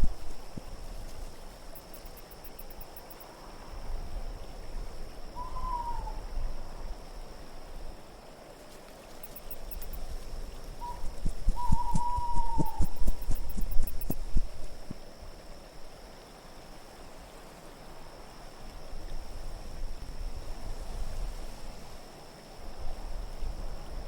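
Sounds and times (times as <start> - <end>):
wind: 0.0 - 24.0
owl hooting: 5.4 - 6.3, 10.8 - 14.7.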